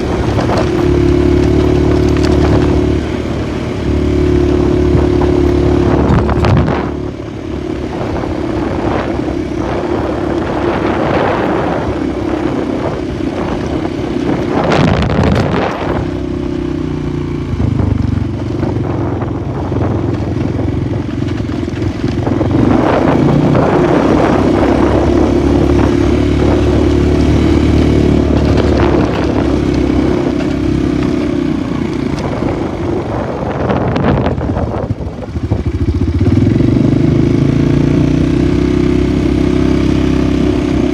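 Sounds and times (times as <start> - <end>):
rattling rushing bursts: 0.0 - 16.2
atv engine running: 0.0 - 40.9.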